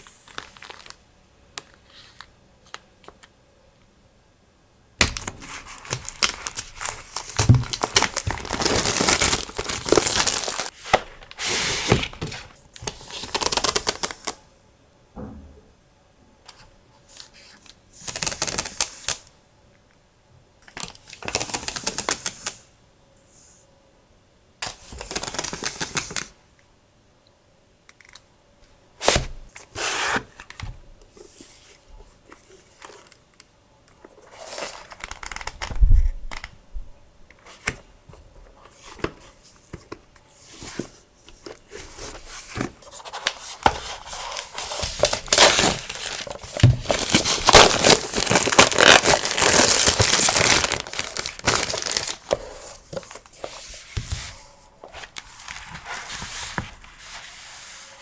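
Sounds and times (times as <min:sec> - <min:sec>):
paper and packaging crinkling: 0:05.1 - 0:14.4, 0:34.1 - 0:36.5, 0:37.4 - 0:58.0.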